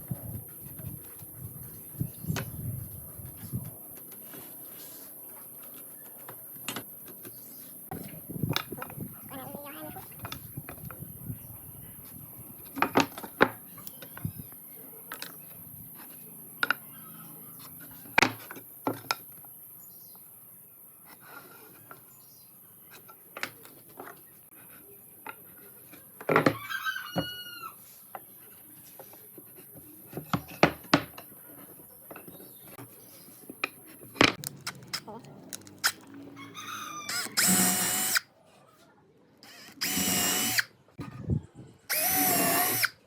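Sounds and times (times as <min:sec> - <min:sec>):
knocks of wood and tools: 0:29.8 - 0:31.3.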